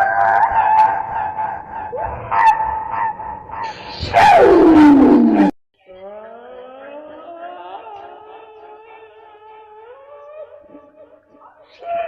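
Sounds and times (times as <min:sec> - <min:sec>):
processed cartoon voice sneeze: 0:03.7 - 0:05.5.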